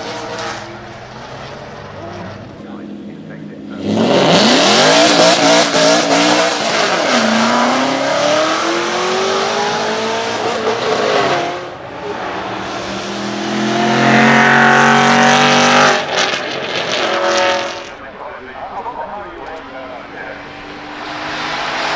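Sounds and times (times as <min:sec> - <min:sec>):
racing car engine accelerating: 0:00.0 - 0:21.9
loud steady engine note: 0:12.7 - 0:21.9.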